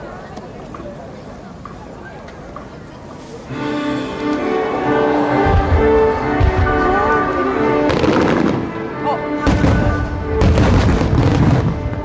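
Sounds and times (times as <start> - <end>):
fireworks bursting: 5.4 - 8.8, 9.4 - 12.0.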